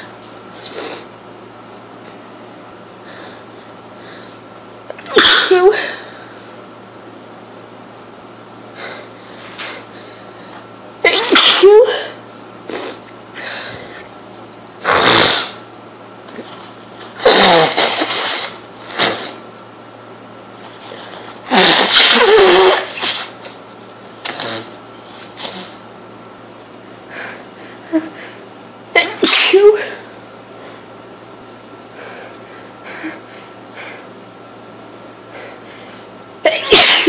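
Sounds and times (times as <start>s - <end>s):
person sneezing: 5.0s - 6.0s, 11.0s - 13.0s, 17.2s - 19.4s, 21.5s - 23.4s, 29.0s - 30.1s, 36.5s - 37.0s.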